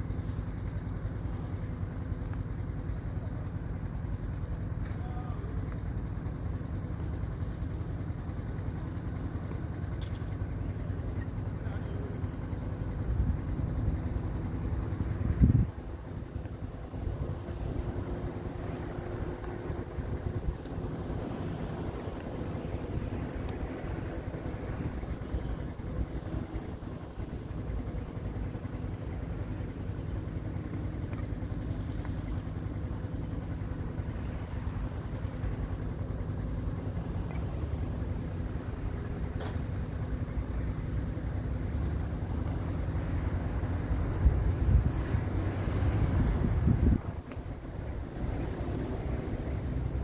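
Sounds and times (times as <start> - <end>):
wind buffeting microphone: 44.3 - 50.0.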